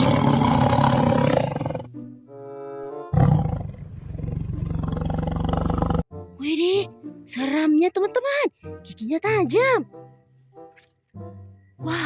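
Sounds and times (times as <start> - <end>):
tiger roar: 0.0 - 1.9, 3.1 - 6.0
children's background music: 6.1 - 12.0.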